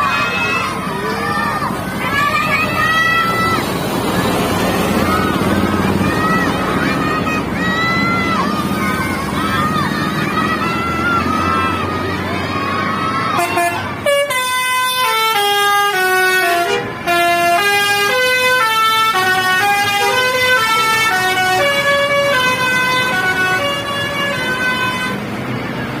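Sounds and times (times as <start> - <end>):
bus musical horn playing tune: 13.3 - 25.4.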